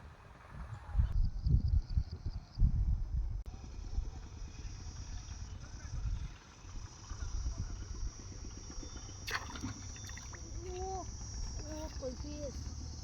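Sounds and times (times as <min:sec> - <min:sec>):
low fluttering rumble: 0:00.1 - 0:13.0
high insect drone: 0:03.5 - 0:13.0.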